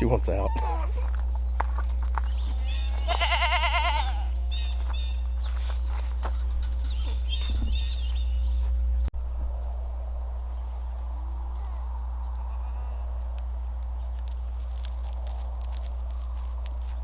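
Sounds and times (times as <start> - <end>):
goat bleating: 0.0 - 1.2, 2.2 - 8.1
small birds chirping: 0.0 - 9.1.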